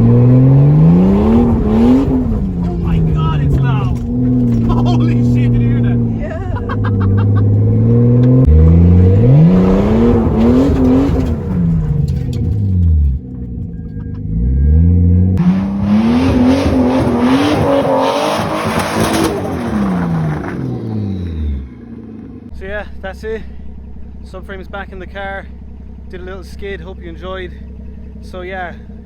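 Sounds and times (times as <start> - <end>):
car engine revving hard: 0.0 - 12.6, 14.2 - 22.5.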